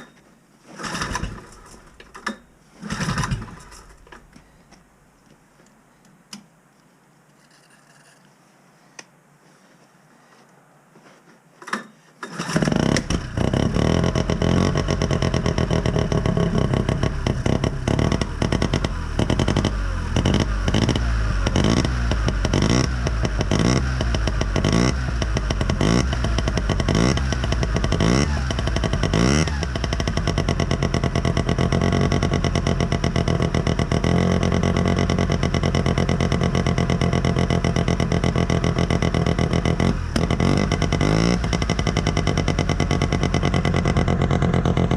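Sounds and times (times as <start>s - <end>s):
rotary engine revving: 0.8s - 1.9s, 2.8s - 3.9s, 12.3s - 44.9s.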